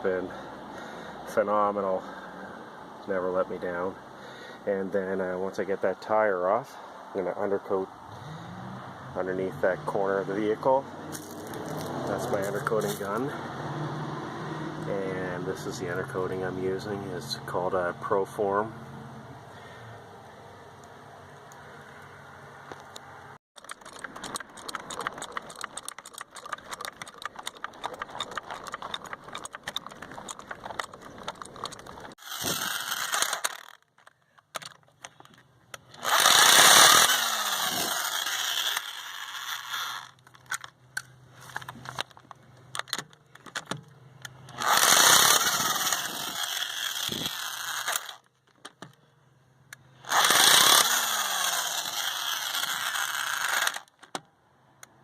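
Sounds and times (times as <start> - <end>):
impact wrench bursts: 23.6 - 33.8, 35.8 - 40.6, 44.5 - 48.2, 50.0 - 54.0
tools clicking and rattling: 23.6 - 49.0, 50.1 - 54.3
motor winding down whine: 31.6 - 33.8, 36.0 - 40.2, 44.5 - 48.2, 50.0 - 53.9.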